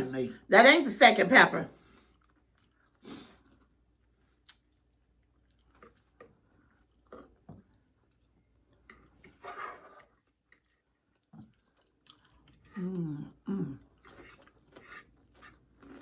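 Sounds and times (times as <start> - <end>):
wet mouth clicks and smacks chewing: 4.4 - 8.4, 11.2 - 12.8.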